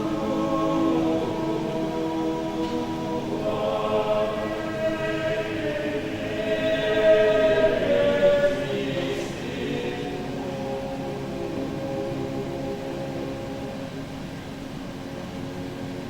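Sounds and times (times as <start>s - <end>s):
choir singing sustained notes: 0.0s - 16.0s.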